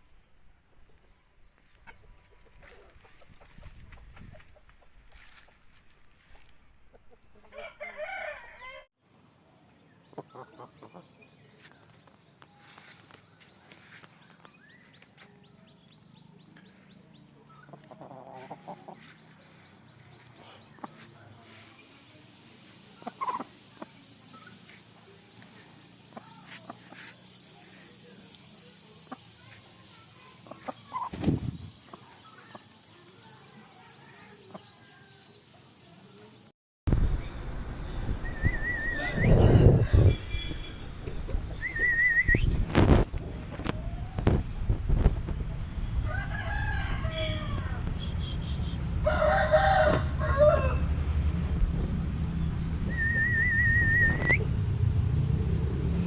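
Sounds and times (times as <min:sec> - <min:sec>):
chickens clucking softly: 0:00.7 - 0:05.7, 0:10.0 - 0:11.2, 0:17.4 - 0:19.3, 0:22.9 - 0:24.6, 0:30.4 - 0:31.2
chickens clucking: 0:00.7 - 0:08.2, 0:10.0 - 0:11.2, 0:16.7 - 0:22.0, 0:22.6 - 0:35.0
rooster crowing: 0:07.5 - 0:08.9, 0:46.0 - 0:47.9, 0:49.0 - 0:50.9.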